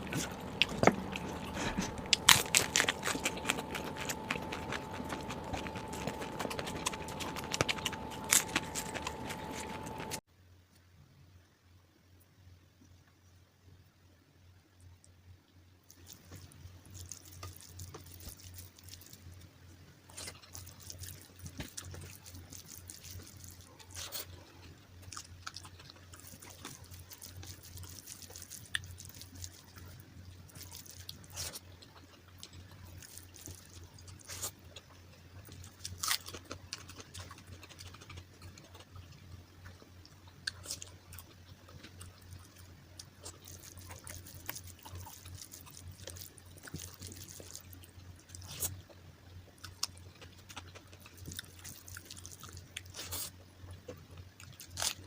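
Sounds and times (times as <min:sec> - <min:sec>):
wet chewing: 0:00.0 - 0:10.2, 0:15.9 - 0:19.5, 0:20.1 - 0:55.0
steady low hum: 0:00.0 - 0:10.3.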